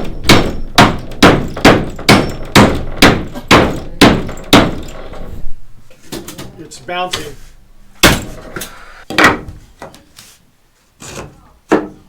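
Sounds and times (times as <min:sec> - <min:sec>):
hammer driving nail into wood: 0:00.0 - 0:05.3.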